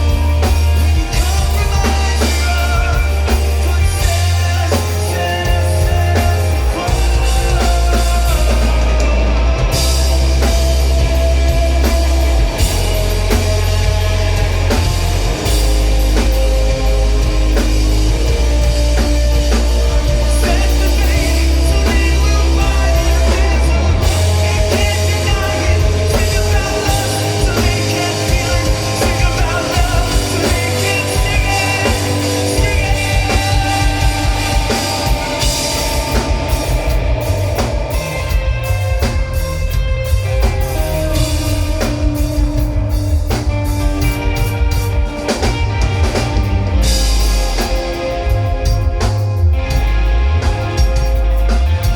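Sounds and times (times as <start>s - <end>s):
person singing: 0.0s - 11.8s, 18.5s - 39.0s
drum kit beat: 0.0s - 51.9s
live rock band: 0.0s - 51.9s.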